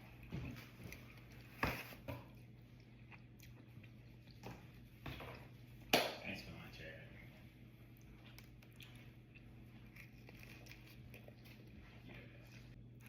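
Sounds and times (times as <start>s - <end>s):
wet chewing: 0.0s - 5.6s, 7.8s - 13.0s.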